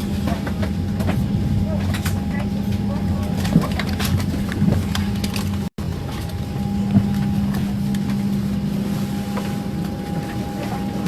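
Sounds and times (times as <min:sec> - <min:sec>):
airliner cabin drone: 0:00.0 - 0:11.0.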